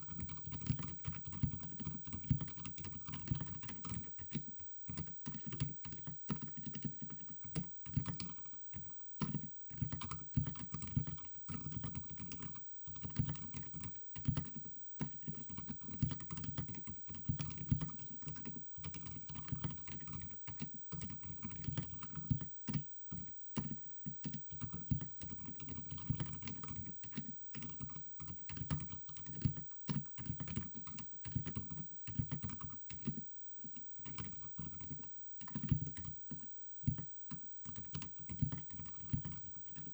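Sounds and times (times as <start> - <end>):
soft keyboard typing: 0.0 - 39.9.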